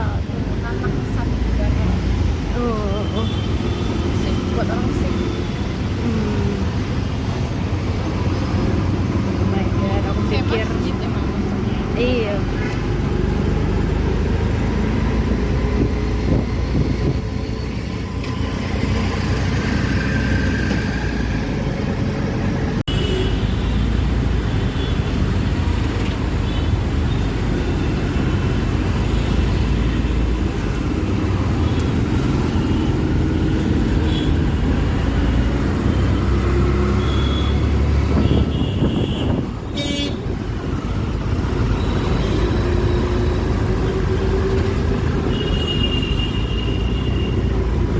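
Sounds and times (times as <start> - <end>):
auto-rickshaw engine and road rumble: 0.0 - 47.9
vehicle horns tooting: 36.8 - 40.3.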